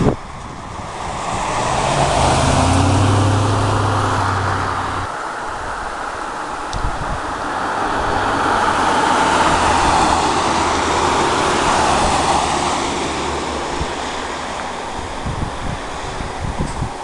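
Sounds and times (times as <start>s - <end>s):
car driving past: 0.1s - 5.1s, 7.1s - 16.1s.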